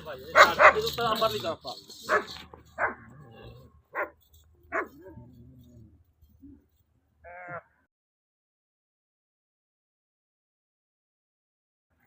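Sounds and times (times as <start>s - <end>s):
dog barking: 0.3s - 1.0s, 2.1s - 3.1s, 3.9s - 5.1s.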